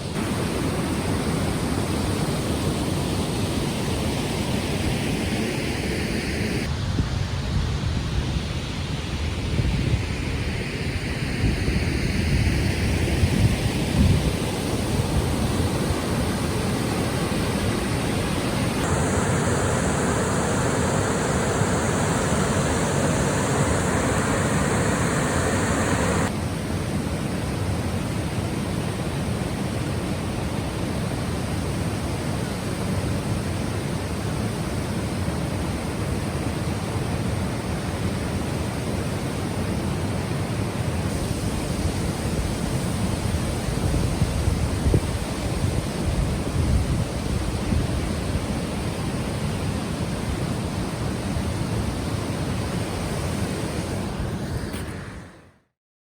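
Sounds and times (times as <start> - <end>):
river water rushing: 15.8 - 26.3.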